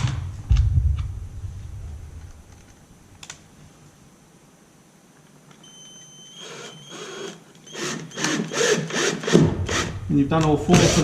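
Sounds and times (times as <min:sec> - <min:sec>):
cordless drill motor whine: 0:05.6 - 0:10.0
screw rasping into wood: 0:06.4 - 0:10.0, 0:10.7 - 0:11.0.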